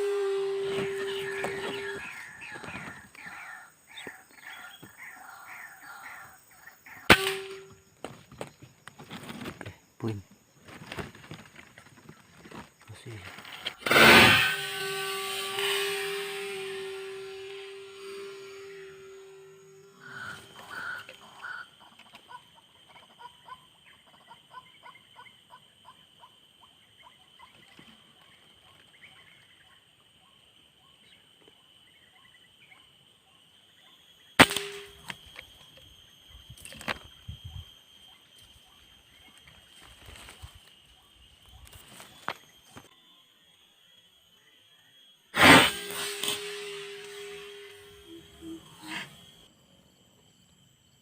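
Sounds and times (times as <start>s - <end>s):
bird calling: 0.0s - 7.8s, 18.0s - 30.4s, 47.0s - 49.5s
high insect drone: 0.0s - 51.0s
gunshot: 7.1s - 7.7s, 34.4s - 35.0s, 45.4s - 46.1s.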